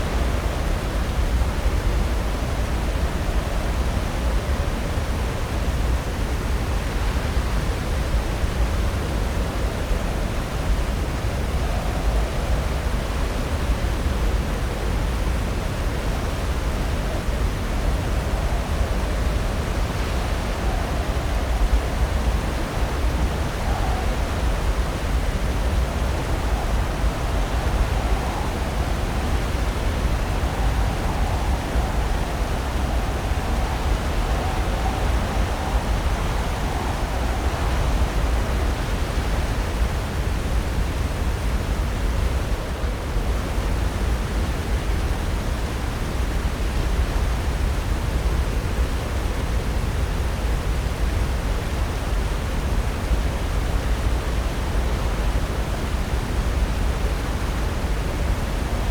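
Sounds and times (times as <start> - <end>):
ocean surf breaking on shore: 16.8 - 41.4.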